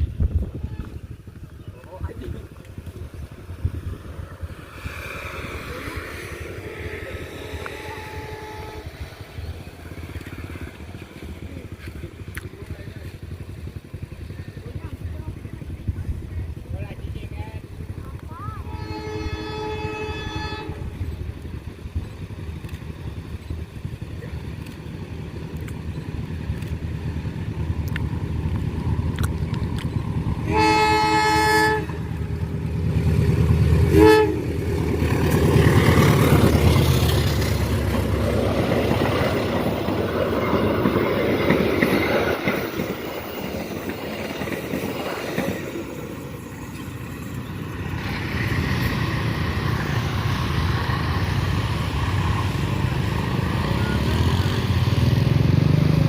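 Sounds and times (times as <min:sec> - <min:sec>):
locomotive engine rumble: 0:00.0 - 0:56.0
train wheels and coaches rushing past: 0:00.0 - 0:56.0
train horn blast: 0:06.7 - 0:09.2, 0:18.6 - 0:21.0, 0:30.4 - 0:32.4, 0:33.8 - 0:34.6.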